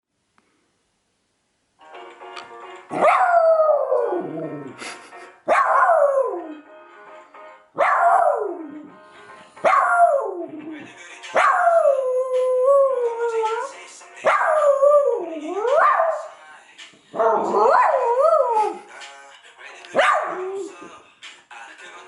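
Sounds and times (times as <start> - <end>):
pop song: 8.2 - 22.0
dog howling: 17.2 - 18.8.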